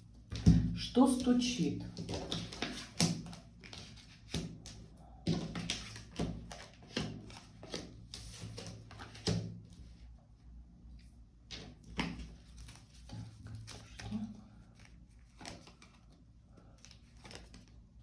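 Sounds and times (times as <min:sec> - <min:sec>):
cards tapping and flicking: 0:02.0 - 0:08.0.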